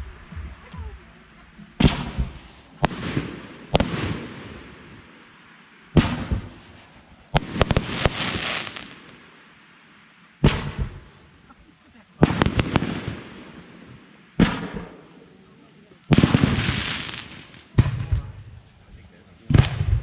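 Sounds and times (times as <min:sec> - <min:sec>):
fireworks bangs: 0:00.0 - 0:09.4, 0:10.4 - 0:20.0.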